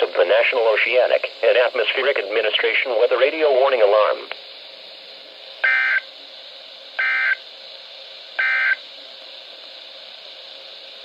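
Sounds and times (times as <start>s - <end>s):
weather radio data bursts: 0.0s - 4.3s, 5.6s - 6.1s, 7.0s - 7.4s, 8.4s - 8.8s
radio static hiss: 0.0s - 11.0s.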